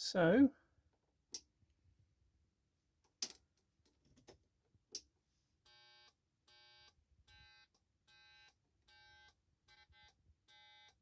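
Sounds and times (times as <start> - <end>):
turn indicator buzzer beeping: 5.7 - 11.0.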